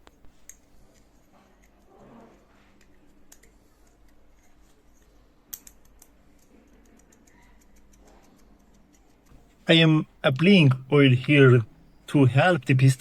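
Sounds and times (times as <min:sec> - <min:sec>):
small parts clicking and tapping: 0:02.8 - 0:09.3.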